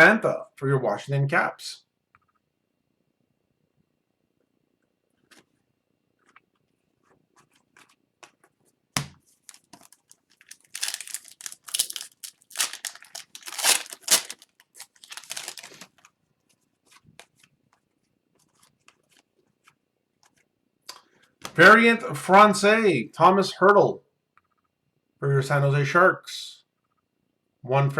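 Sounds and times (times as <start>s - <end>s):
foil wrapper tearing and crinkling: 9.4s - 16.1s.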